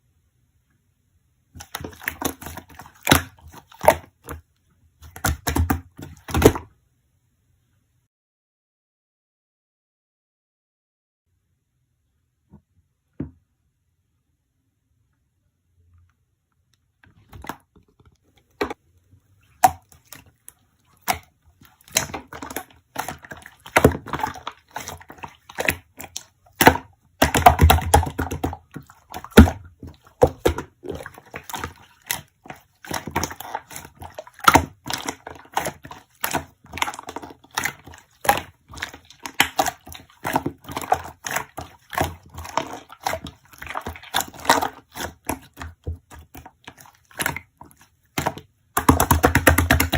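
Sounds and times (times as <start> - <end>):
slime squished by hand: 1.6 - 4.4, 5.0 - 6.7, 19.4 - 49.9.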